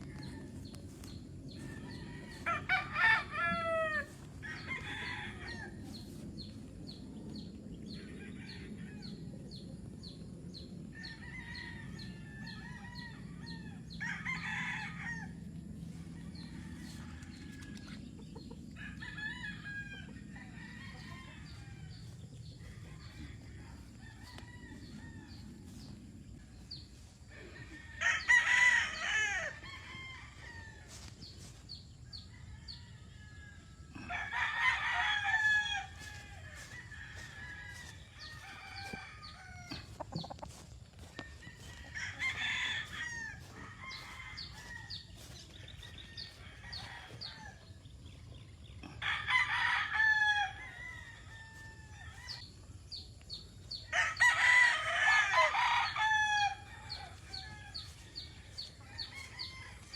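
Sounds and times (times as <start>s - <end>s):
roosters crowing: 0.0s - 59.9s
chickens clucking: 36.0s - 49.0s.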